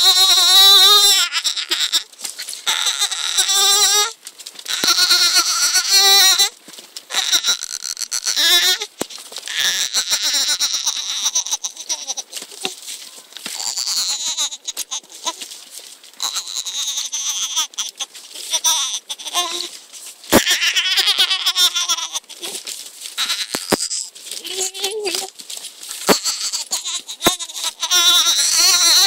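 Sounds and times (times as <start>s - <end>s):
baby making drawn-out vocal sounds: 0.0s - 2.0s, 18.5s - 19.7s, 23.2s - 25.3s, 26.1s - 29.0s.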